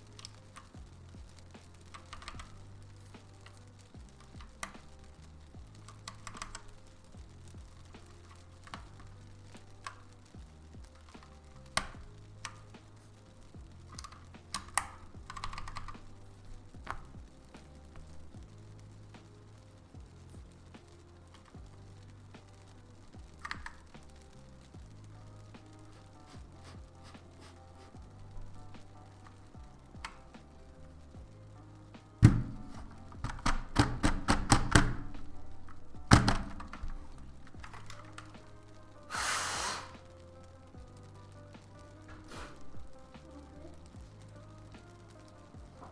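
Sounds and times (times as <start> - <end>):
background music with low beat: 0.0 - 45.9
mechanical keyboard clicks: 1.8 - 2.7, 5.7 - 6.8, 13.8 - 16.2, 23.3 - 24.2, 32.2 - 38.8
heavy keyboard thunk: 32.2 - 35.1, 36.0 - 37.0.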